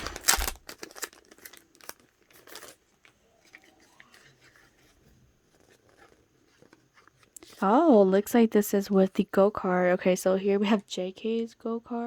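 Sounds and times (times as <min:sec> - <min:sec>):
plastic packaging crinkling: 0:00.0 - 0:07.7.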